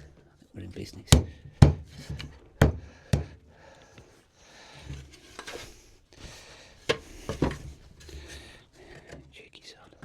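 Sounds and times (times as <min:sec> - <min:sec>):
sharp wooden knocks: 0:01.1 - 0:03.4.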